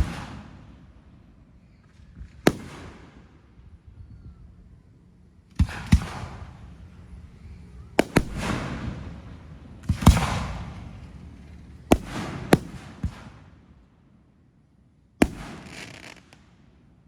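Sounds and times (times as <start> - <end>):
fireworks bangs: 0.0 - 0.8, 1.7 - 3.4, 5.6 - 13.5, 15.2 - 16.4.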